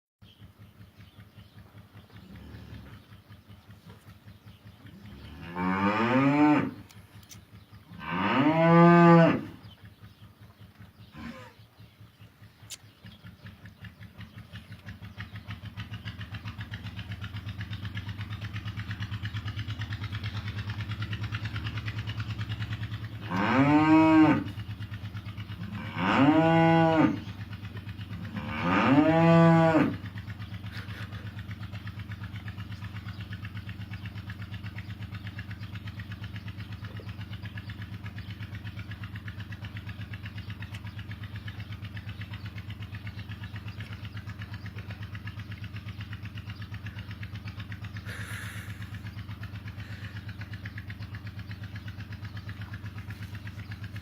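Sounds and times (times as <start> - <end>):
motor running: 1.0 - 54.0
cow mooing: 5.2 - 6.9, 8.0 - 9.6, 23.2 - 24.6, 25.6 - 27.3, 28.2 - 30.1.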